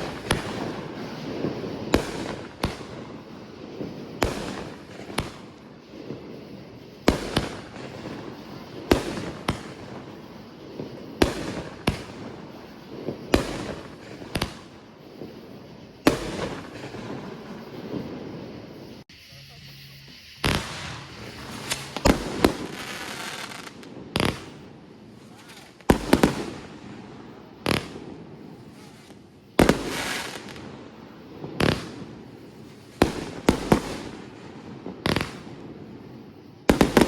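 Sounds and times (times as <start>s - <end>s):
fireworks booming: 0.0s - 37.0s
fireworks crackling: 0.0s - 37.0s.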